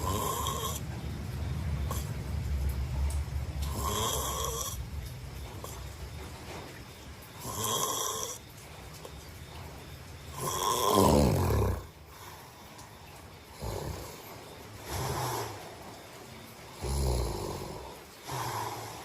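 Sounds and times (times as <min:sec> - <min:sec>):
man snoring: 0:00.0 - 0:00.8, 0:03.6 - 0:04.8, 0:07.4 - 0:08.4, 0:10.4 - 0:11.9, 0:13.6 - 0:14.2, 0:14.8 - 0:15.7, 0:16.8 - 0:19.0.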